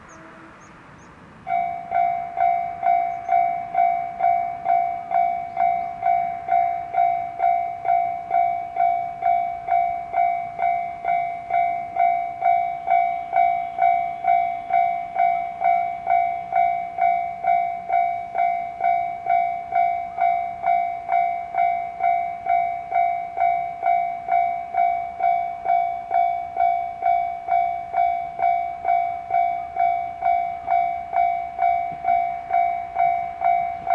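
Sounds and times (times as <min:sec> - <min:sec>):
level crossing warning bell ringing: 0:01.4 - 0:33.9.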